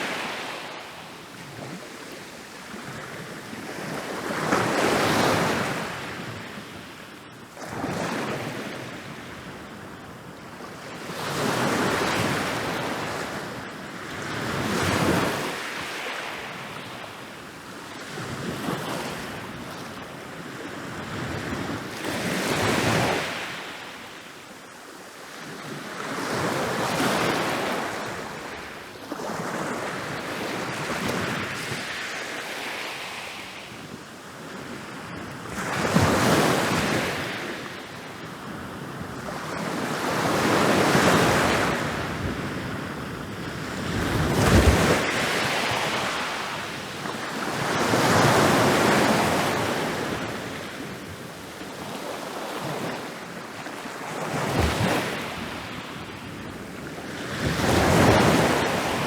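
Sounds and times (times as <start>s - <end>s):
ocean waves breaking on beach: 0.0s - 59.0s.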